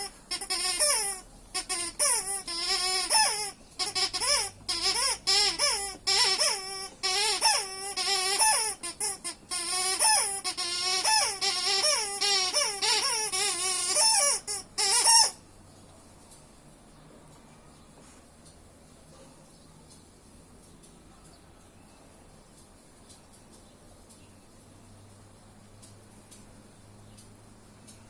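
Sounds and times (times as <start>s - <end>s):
dog whining: 0.0s - 15.4s.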